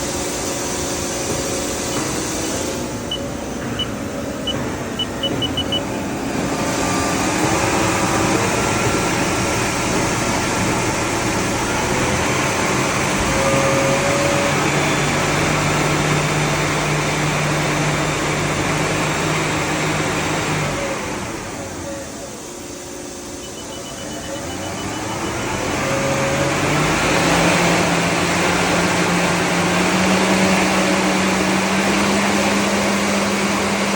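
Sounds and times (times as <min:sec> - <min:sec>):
short high beeps: 0:01.9 - 0:05.9, 0:23.4 - 0:25.6.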